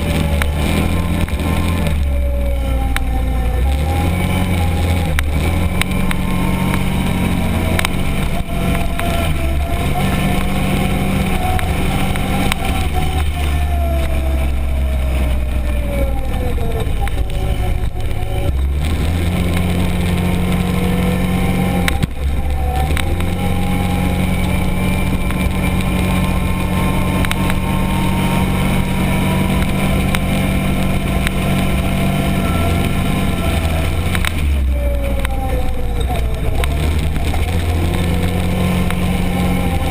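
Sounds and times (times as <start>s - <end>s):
heavy low rumble: 0.0s - 39.9s
side-by-side engine running: 0.0s - 39.9s.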